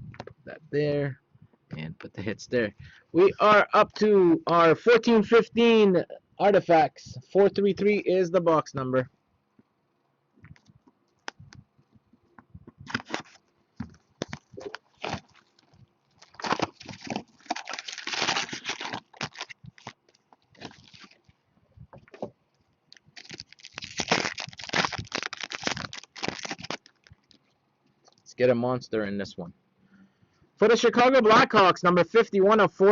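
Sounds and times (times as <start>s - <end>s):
plastic wrap crinkling and tearing: 14.2s - 21.3s, 23.0s - 27.4s.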